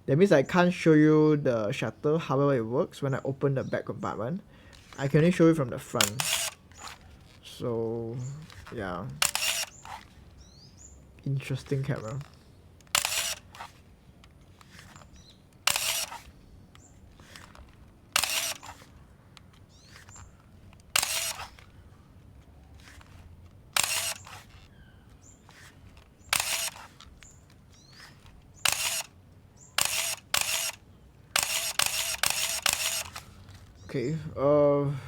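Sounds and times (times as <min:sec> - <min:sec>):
camera shutter clattering: 0:05.9 - 0:07.4, 0:08.4 - 0:10.4, 0:11.5 - 0:33.8.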